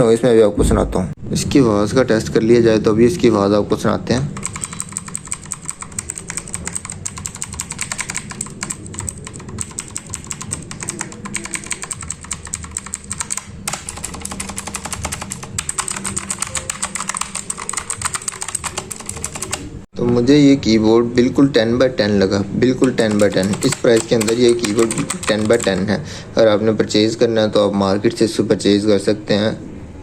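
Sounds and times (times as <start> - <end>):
mechanical keyboard typing: 4.3 - 19.8, 22.8 - 25.9.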